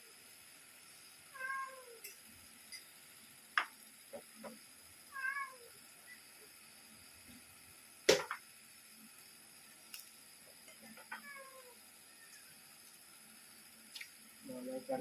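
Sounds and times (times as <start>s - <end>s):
cat meowing: 1.3s - 2.0s, 5.1s - 5.7s.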